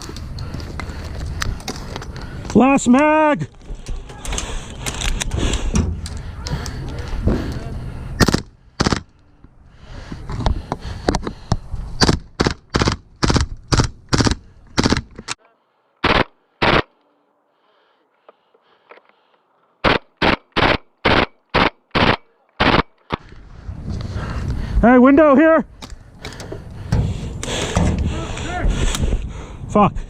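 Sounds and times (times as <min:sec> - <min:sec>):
airsoft gun shots: 0:08.2 - 0:09.0, 0:19.8 - 0:22.9.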